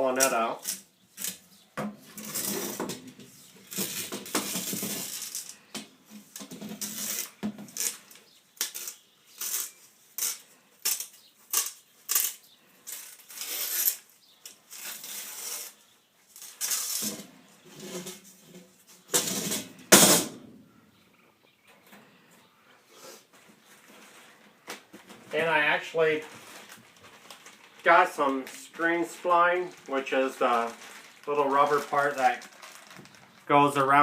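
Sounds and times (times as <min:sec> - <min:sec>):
window screen mesh scraping rips: 0:00.2 - 0:05.7, 0:06.7 - 0:18.2.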